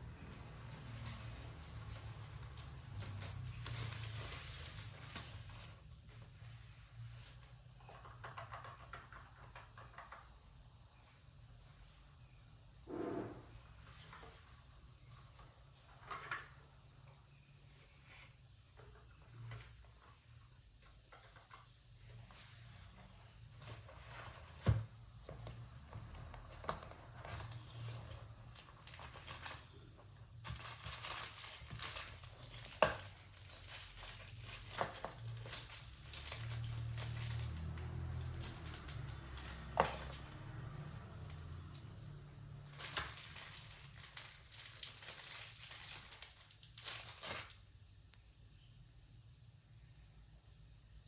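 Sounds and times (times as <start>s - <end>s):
packaging crinkling: 30.4s - 41.6s, 42.6s - 47.6s.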